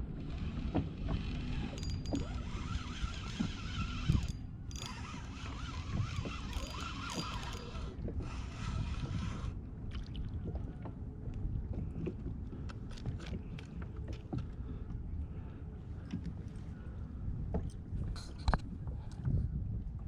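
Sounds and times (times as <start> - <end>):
water against kayak hull: 0.0 - 20.0
wind rumbling on microphone: 0.0 - 20.0
small clicks and knocks: 0.7 - 7.9.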